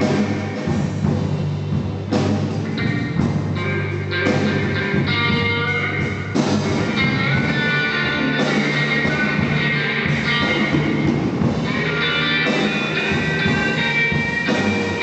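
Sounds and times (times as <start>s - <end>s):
blues rock band playing: 0.0s - 15.0s
electric guitar: 0.0s - 15.0s.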